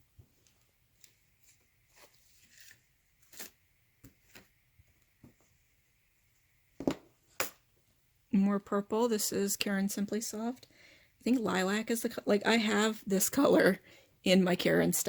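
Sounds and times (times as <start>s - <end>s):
rustling of wrappings: 0.4s - 4.6s.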